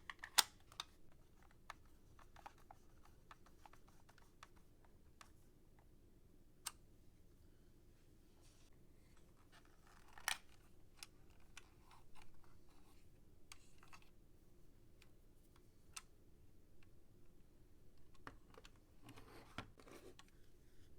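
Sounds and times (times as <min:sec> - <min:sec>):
small clicks of handling: 0:00.0 - 0:05.9, 0:09.6 - 0:14.1.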